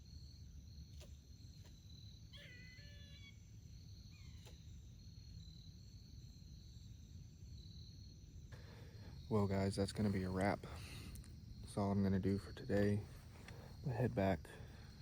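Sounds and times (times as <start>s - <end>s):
faint high insect-like tone: 0.0s - 15.0s
squirrel chirping: 4.0s - 4.8s.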